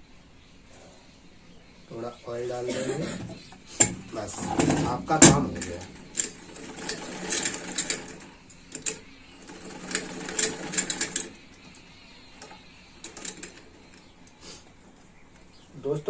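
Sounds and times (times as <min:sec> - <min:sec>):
sewing machine running: 0:03.2 - 0:14.0.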